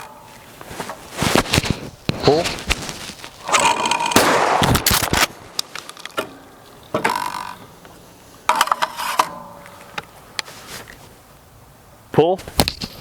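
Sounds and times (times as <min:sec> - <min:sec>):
sharp cracks and clatter: 0:01.3 - 0:07.9
shotgun blast: 0:04.0 - 0:05.6.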